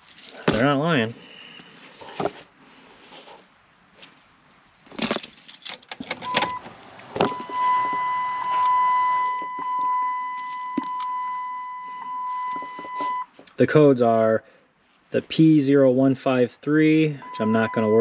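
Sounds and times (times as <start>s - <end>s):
handling clatter and rattle: 0.0s - 0.8s, 4.8s - 6.6s
high electronic beep tone: 7.3s - 13.3s, 17.2s - 18.0s.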